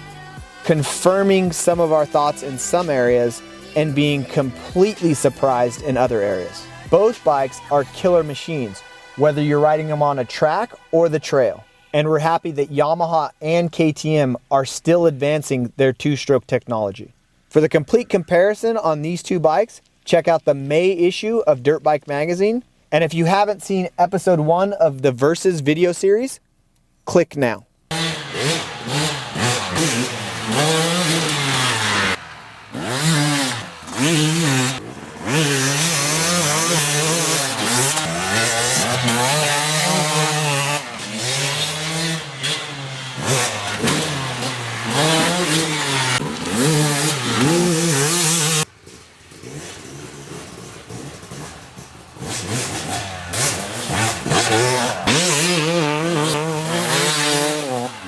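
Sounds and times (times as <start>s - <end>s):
dirt bike engines revving: 0.0s - 12.9s, 27.9s - 58.0s.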